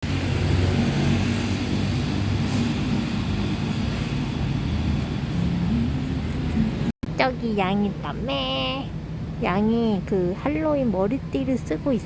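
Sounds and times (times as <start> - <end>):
street traffic rumble: 0.0 - 12.0.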